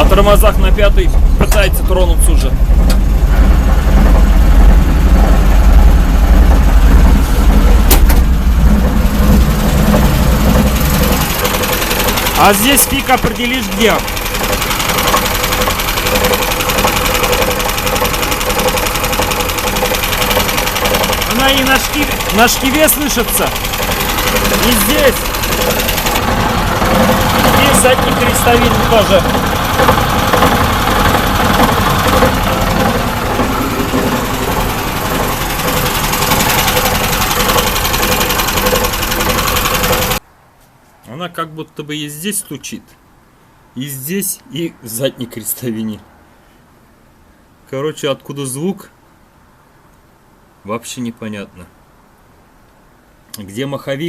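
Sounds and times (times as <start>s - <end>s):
engine idling: 0.0s - 40.2s
rapid regular driveline knock: 0.0s - 40.2s.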